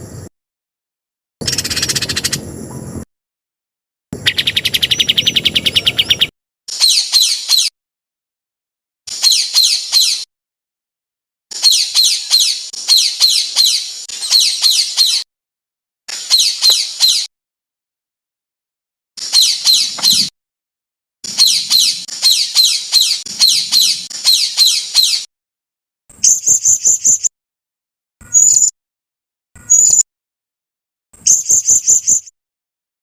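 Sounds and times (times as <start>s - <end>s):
songbird song: 1.4s - 3.1s, 4.2s - 7.7s, 9.1s - 10.3s, 11.5s - 15.3s, 16.1s - 17.3s, 19.2s - 20.3s, 21.3s - 25.3s, 26.2s - 27.3s, 28.2s - 28.7s, 29.6s - 30.0s, 31.2s - 32.3s.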